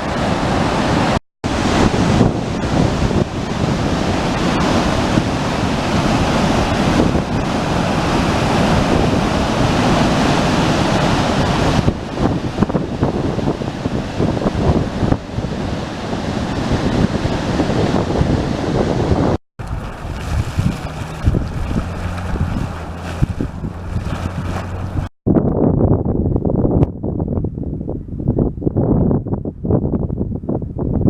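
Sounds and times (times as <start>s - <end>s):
rushing water: 0.0s - 15.3s, 19.6s - 25.1s
wind buffeting microphone: 0.0s - 31.0s.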